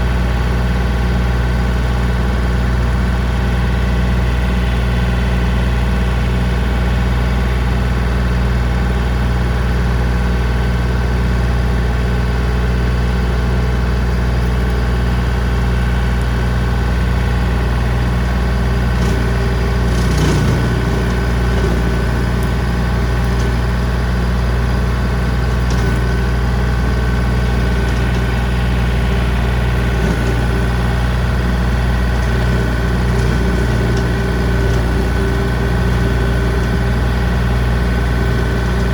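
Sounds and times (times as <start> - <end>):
tractor diesel engine running: 0.0 - 38.9
rotary cutter: 18.7 - 38.9.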